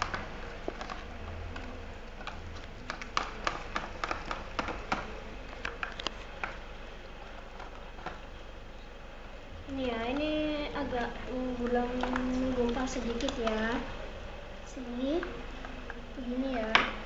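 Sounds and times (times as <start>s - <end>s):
slime being stirred clicking: 0.0s - 8.4s, 9.7s - 14.0s.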